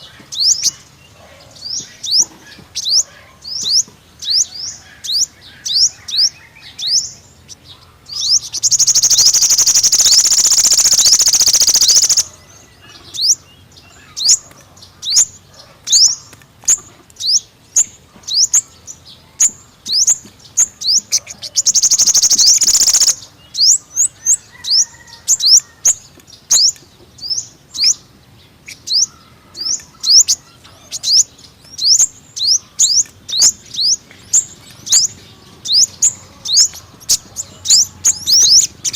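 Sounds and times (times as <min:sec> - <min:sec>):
bird chirping: 0:00.0 - 0:38.9
bird trilling: 0:08.2 - 0:12.4, 0:20.0 - 0:25.7.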